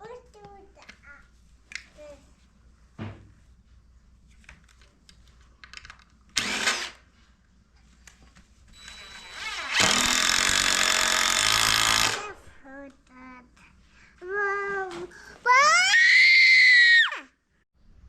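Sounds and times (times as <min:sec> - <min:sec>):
power drill motor running: 0:06.4 - 0:07.0, 0:08.8 - 0:12.4.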